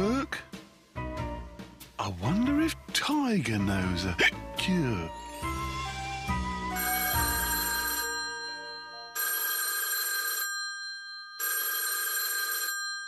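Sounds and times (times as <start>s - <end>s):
cartoon telephone ringing: 6.8s - 13.0s.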